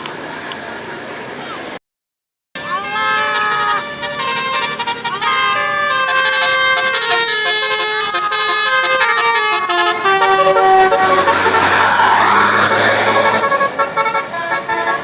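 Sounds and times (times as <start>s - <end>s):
musical bus air horn: 2.6s - 11.9s, 12.5s - 15.0s.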